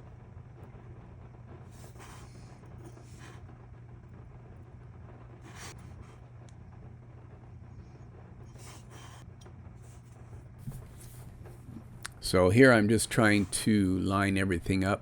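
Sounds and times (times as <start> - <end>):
faint low hum: 0.0 - 15.0
soft rustles: 9.8 - 12.2.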